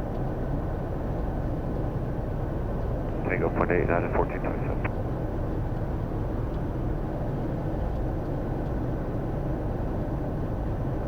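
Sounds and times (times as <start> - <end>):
jet engines running: 1.1 - 7.6.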